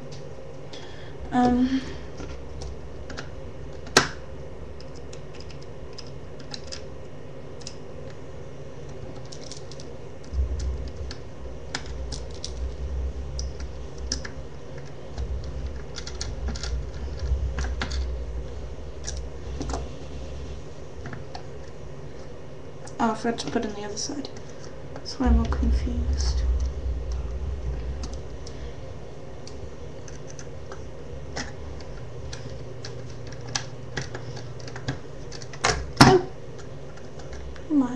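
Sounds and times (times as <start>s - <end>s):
plastic parts clicking: 4.8s - 6.9s, 8.9s - 9.9s, 31.4s - 36.2s
low rumbling handling noise: 8.1s - 37.7s.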